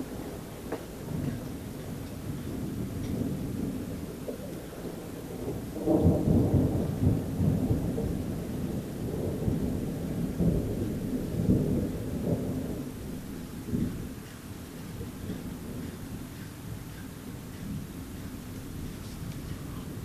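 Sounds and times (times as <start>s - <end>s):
rolling thunder: 0.0s - 20.0s.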